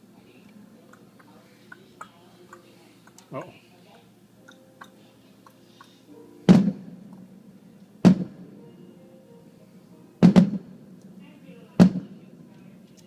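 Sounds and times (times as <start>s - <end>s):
fireworks booming: 6.5s - 7.3s, 8.0s - 8.6s, 10.2s - 10.9s, 11.8s - 12.2s.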